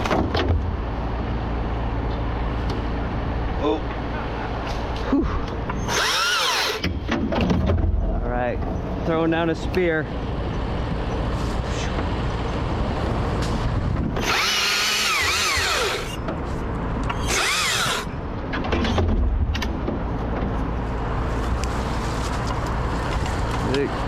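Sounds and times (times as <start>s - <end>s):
low engine hum: 0.0s - 24.0s
chainsaw cutting wood: 5.8s - 7.0s, 14.2s - 16.2s, 17.1s - 18.1s.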